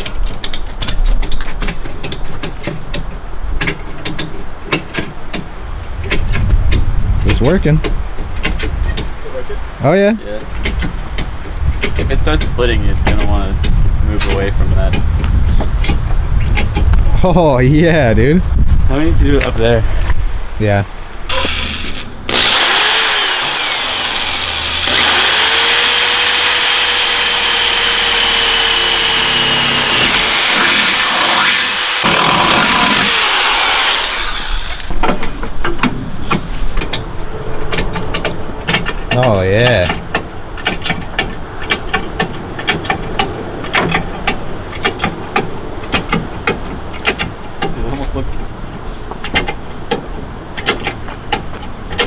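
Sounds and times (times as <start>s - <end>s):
power tool whining: 21.3s - 35.0s.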